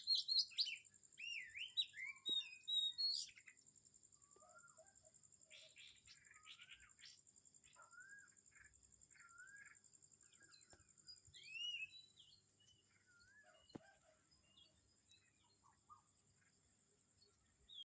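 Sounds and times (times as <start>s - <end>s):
birds whistling and chirping: 0.0s - 3.6s, 5.6s - 8.4s, 9.1s - 13.9s.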